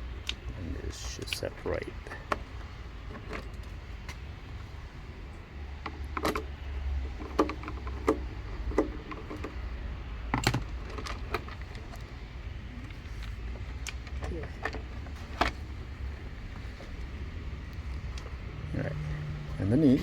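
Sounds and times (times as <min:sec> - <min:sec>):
plastic clicks and knocks: 0:07.2 - 0:09.6.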